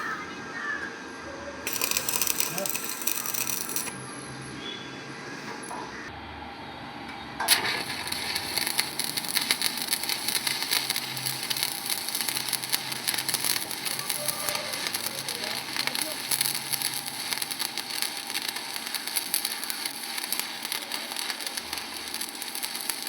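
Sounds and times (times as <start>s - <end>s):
welding arc crackling: 1.7s - 4.0s, 7.5s - 23.0s.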